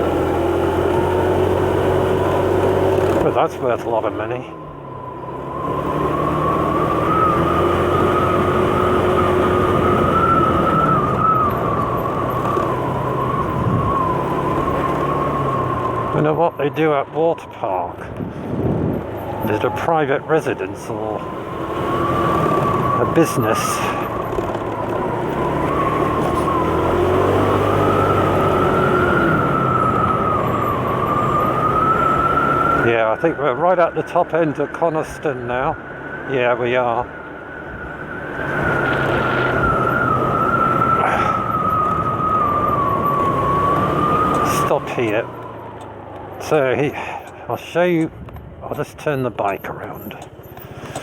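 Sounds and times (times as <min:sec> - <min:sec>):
motor scooter running: 0:00.0 - 0:04.1, 0:18.8 - 0:33.4, 0:38.1 - 0:47.4
road and wind rush: 0:00.0 - 0:51.0
high-pitched whine: 0:24.9 - 0:45.7.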